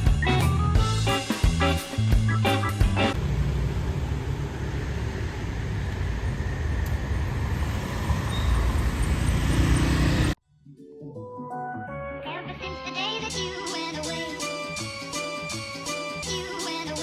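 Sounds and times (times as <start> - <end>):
traffic rumble: 3.1 - 10.4.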